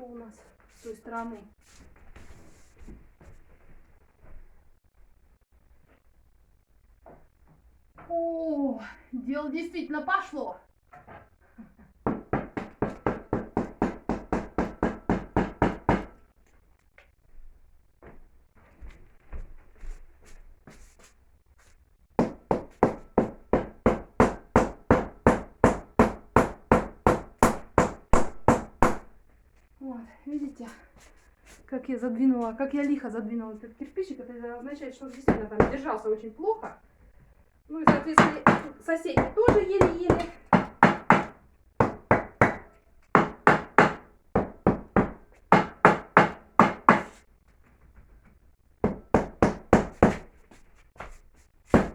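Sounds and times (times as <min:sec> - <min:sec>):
hammer knocking on brick: 0:12.0 - 0:16.2, 0:22.2 - 0:29.1, 0:35.3 - 0:35.8, 0:37.9 - 0:47.1, 0:48.8 - 0:50.3.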